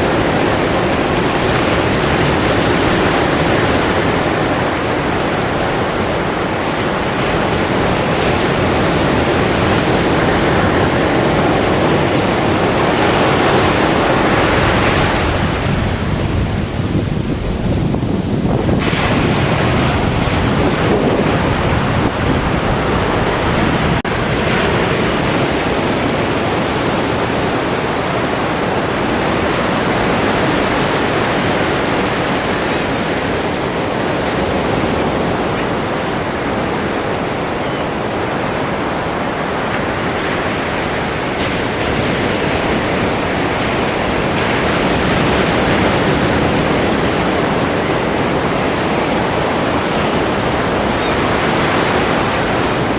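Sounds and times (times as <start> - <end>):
ocean waves breaking on shore: 0.0 - 52.9.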